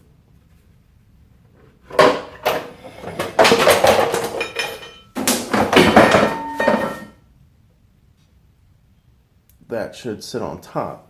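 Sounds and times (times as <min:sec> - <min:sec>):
plastic parts clattering on bike frame: 0:01.9 - 0:07.1.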